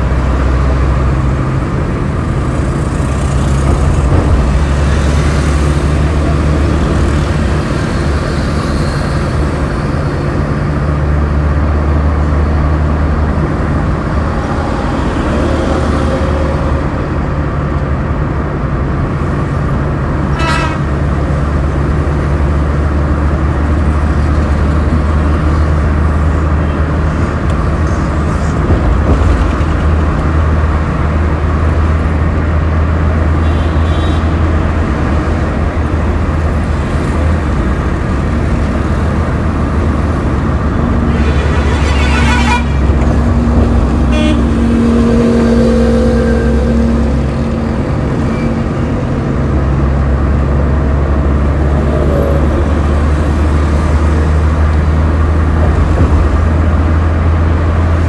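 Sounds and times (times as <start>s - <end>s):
vehicle engine running: 0.0s - 20.3s, 21.0s - 58.0s
road traffic drone: 0.0s - 58.0s
horn toot: 20.3s - 21.0s, 40.9s - 48.9s.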